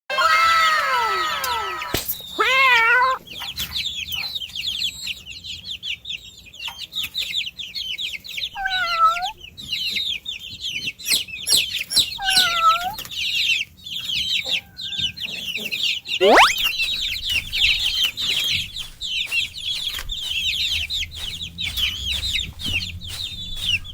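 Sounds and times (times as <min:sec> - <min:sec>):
chicks peeping: 0:00.9 - 0:23.9
short lower calls: 0:16.2 - 0:16.8.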